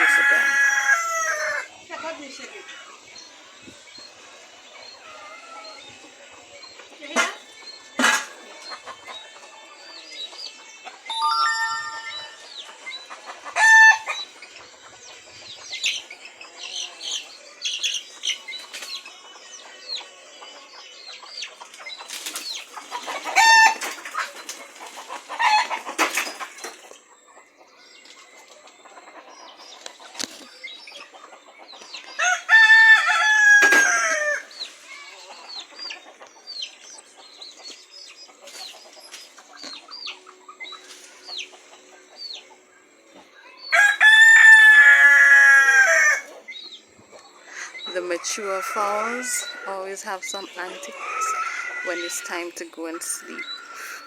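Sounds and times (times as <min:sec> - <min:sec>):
rooster crowing: 0:00.0 - 0:01.7, 0:43.7 - 0:46.3
chickens clucking and chirping: 0:00.0 - 0:54.0.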